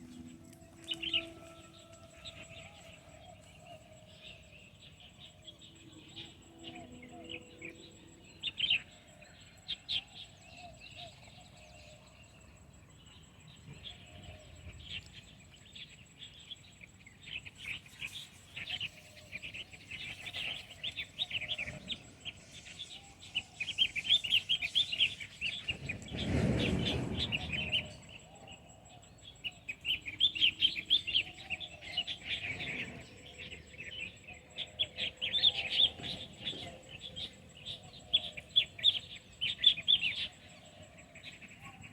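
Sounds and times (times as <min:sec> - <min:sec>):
small birds chirping: 0:13.5 - 0:41.9.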